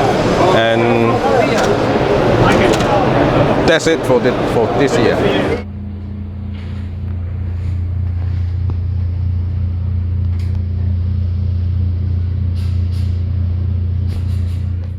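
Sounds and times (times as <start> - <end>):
low droning bass: 5.6 - 14.9.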